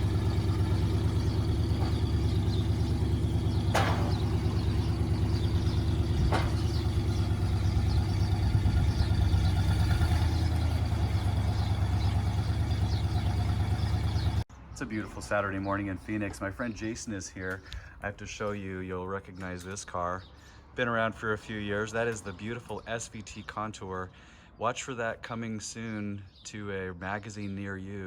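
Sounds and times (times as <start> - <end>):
car engine idling: 0.0 - 14.5.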